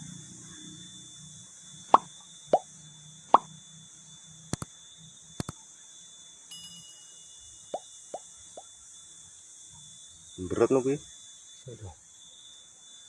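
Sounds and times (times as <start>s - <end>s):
high-pitched hum: 0.0s - 13.0s
sharp clicks: 4.5s - 4.7s, 5.4s - 5.6s.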